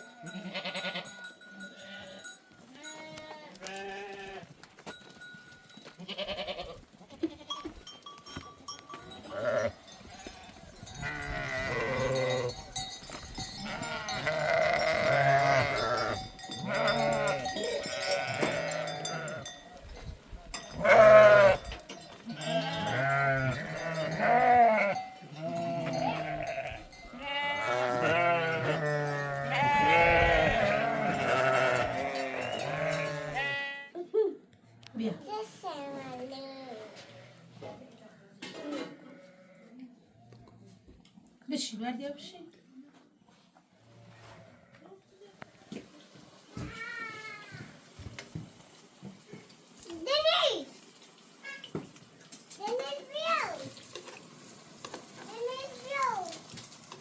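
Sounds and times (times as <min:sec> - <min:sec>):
small bells tinkling: 0:00.0 - 0:03.2, 0:04.8 - 0:06.3, 0:07.4 - 0:28.3, 0:31.4 - 0:33.6
sheep and goats bleating: 0:00.0 - 0:04.6, 0:05.8 - 0:07.7, 0:08.6 - 0:19.7, 0:20.6 - 0:34.0, 0:38.7 - 0:39.9, 0:44.2 - 0:45.0.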